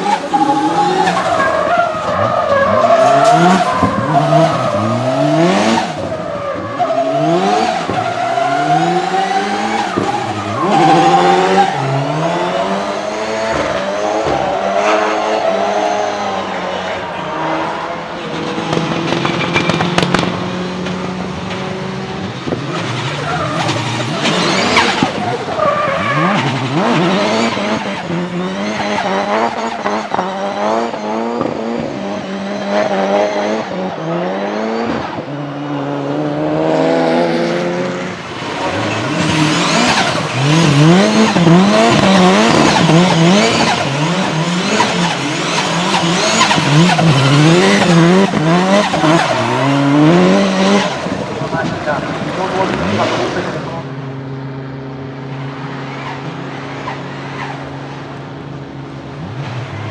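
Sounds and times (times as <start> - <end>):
engine revving: 0.0 - 58.1
tyres squealing: 22.7 - 30.1, 38.4 - 53.4.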